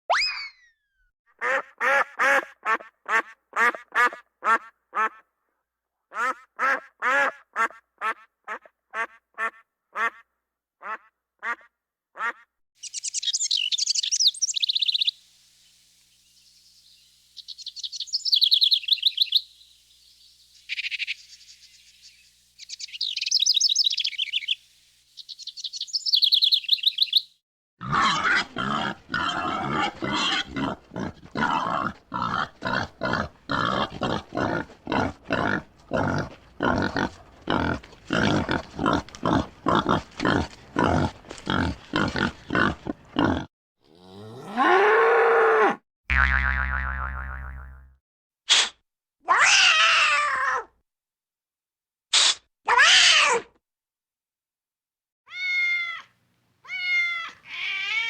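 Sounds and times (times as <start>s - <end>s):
duck quacking: 1.4s - 5.2s, 6.1s - 10.2s, 10.8s - 12.4s
wren singing trills: 12.8s - 15.2s, 16.0s - 24.6s, 25.2s - 27.4s
wild boar grunting: 27.8s - 44.9s.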